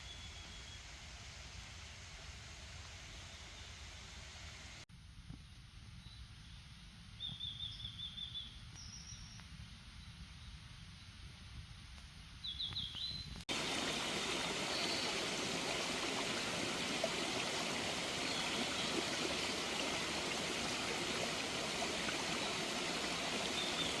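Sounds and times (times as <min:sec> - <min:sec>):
stream running: 0:13.5 - 0:24.0
bird chirping: 0:22.4 - 0:24.0.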